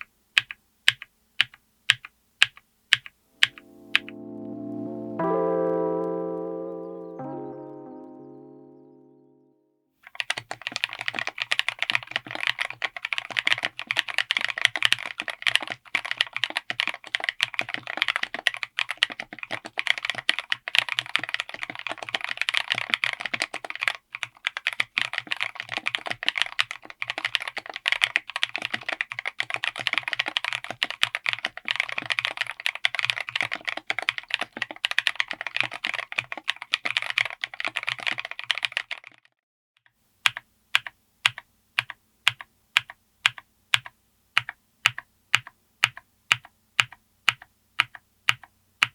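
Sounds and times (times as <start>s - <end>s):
fast typing on mechanical keyboard: 0.0s - 3.6s, 10.0s - 39.3s, 40.2s - 48.9s.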